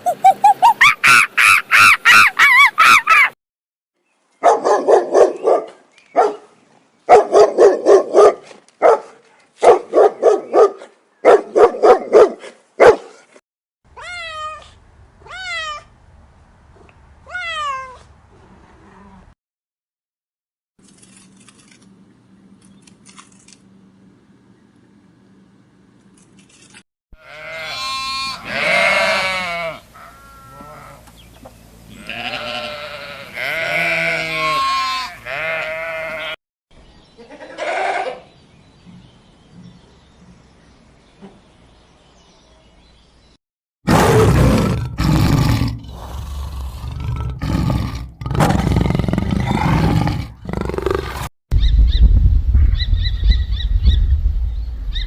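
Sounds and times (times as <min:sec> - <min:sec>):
animal bleating: 0:27.2 - 0:31.0, 0:31.9 - 0:36.4, 0:37.2 - 0:38.3.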